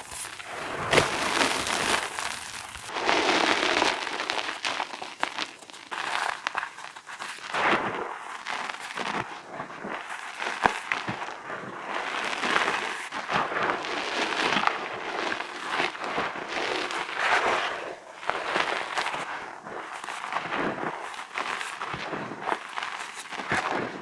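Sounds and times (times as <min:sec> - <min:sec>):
chalk crunching and crackling: 0:00.0 - 0:07.5.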